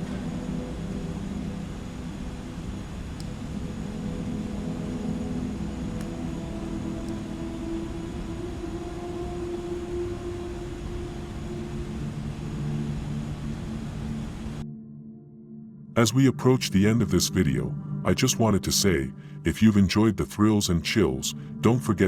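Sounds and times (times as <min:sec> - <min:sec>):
low hums shifting in pitch: 0:00.0 - 0:14.6
low rumbling drone: 0:00.0 - 0:15.9.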